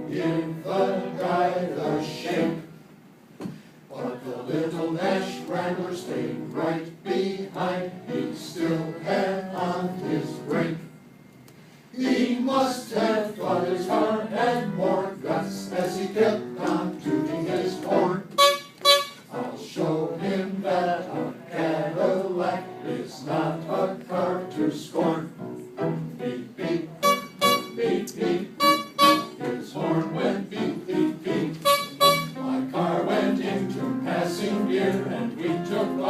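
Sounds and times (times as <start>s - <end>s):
choir singing: 0.0s - 2.8s, 3.9s - 11.0s, 11.9s - 18.4s, 19.3s - 36.0s
piano accompaniment: 12.0s - 36.0s.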